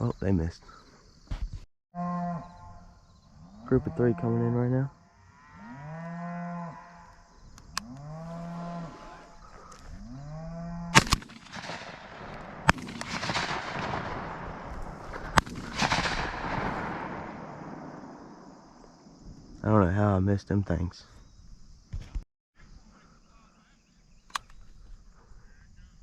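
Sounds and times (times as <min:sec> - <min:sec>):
cow mooing: 0:02.0 - 0:04.6, 0:05.2 - 0:07.1, 0:07.8 - 0:11.0
shotgun shots: 0:10.9 - 0:18.6.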